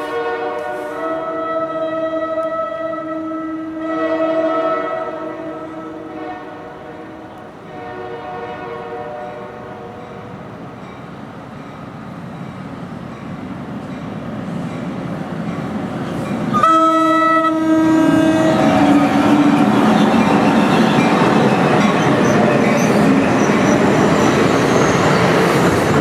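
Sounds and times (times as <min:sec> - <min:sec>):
train horn blasts: 0:00.0 - 0:10.2, 0:16.5 - 0:21.0
approaching train rumble: 0:00.0 - 0:26.0.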